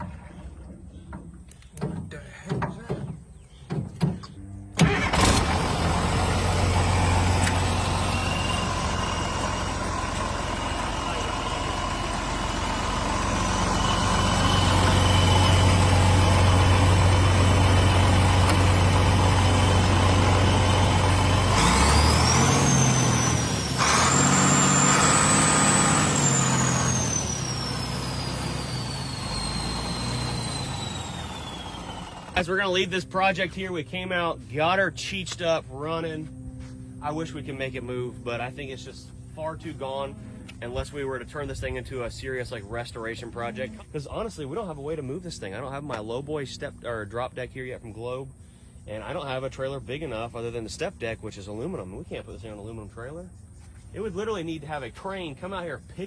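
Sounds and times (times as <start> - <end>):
bulldozer diesel engine: 4.2 - 34.9.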